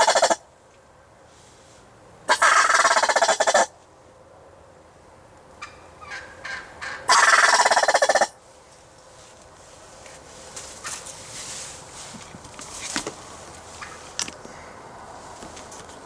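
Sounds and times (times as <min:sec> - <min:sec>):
turkey gobbling: 0:00.0 - 0:00.4, 0:02.3 - 0:03.7, 0:05.6 - 0:08.4.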